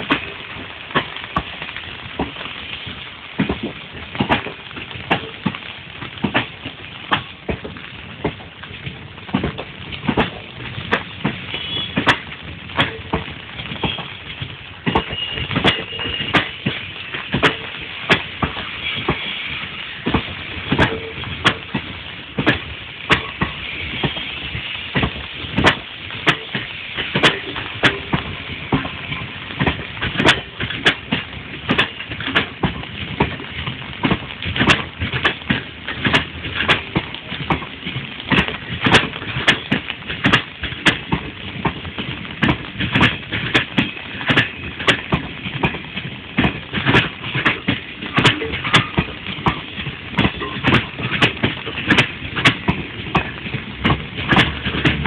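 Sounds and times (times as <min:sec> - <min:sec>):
train rumble and hiss: 0:00.0 - 0:55.0
train wheels clacking over joints: 0:00.0 - 0:55.0.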